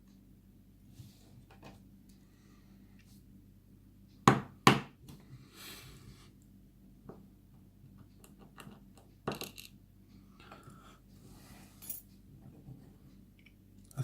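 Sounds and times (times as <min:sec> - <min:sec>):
lock pins falling on hard surface: 0:08.6 - 0:09.8.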